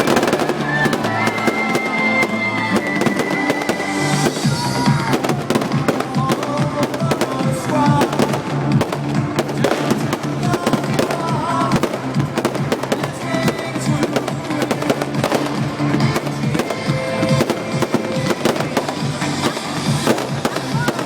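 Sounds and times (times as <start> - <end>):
fireworks bangs and crackles: 0.0 - 21.0
music: 0.0 - 21.0.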